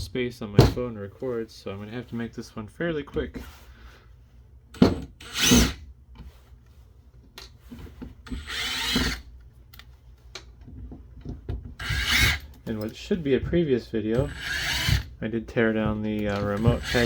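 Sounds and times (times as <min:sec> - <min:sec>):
power screwdriver whirring: 0:08.3 - 0:09.2, 0:11.8 - 0:12.5, 0:14.2 - 0:15.1, 0:16.4 - 0:17.0.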